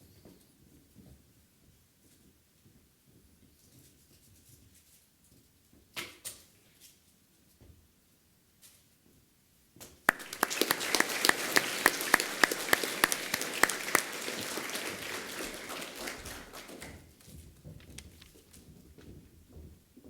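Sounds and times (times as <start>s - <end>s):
loud single claps nearby: 10.1s - 17.0s
audience applauding: 10.1s - 17.1s.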